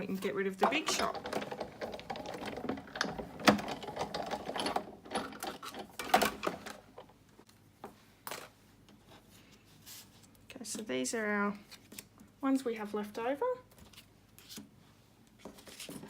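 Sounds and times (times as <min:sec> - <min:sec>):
hand-cranked machine gears clattering: 0:00.6 - 0:07.1.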